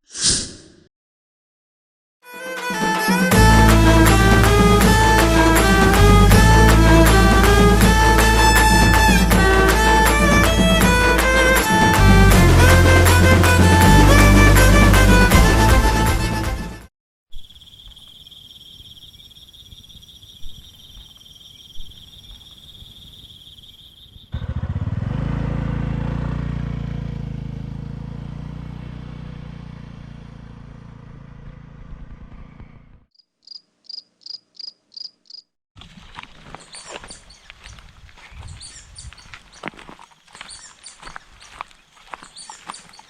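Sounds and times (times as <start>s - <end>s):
insects trilling: 17.3s - 24.4s, 33.2s - 43.0s.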